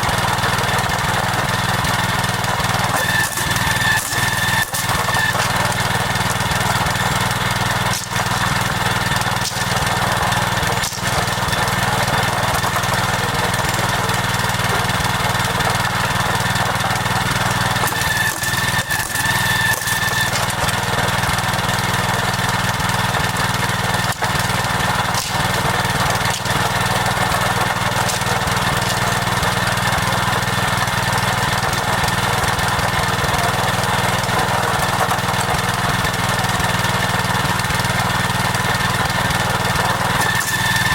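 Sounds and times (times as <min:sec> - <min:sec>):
small engine running: 0:00.0 - 0:40.9.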